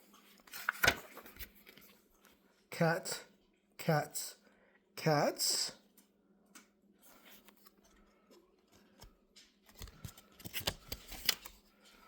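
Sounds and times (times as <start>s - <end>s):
book pages rustling: 0.0s - 2.3s, 7.0s - 12.0s
paper clicks: 8.7s - 11.6s.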